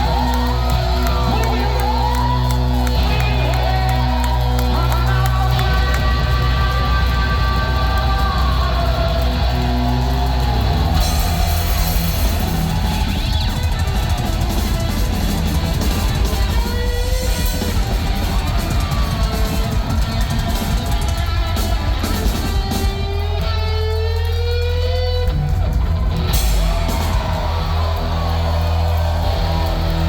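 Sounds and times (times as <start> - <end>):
distorted electric guitar: 0.0 - 30.0
pounding drum kit: 0.0 - 30.0.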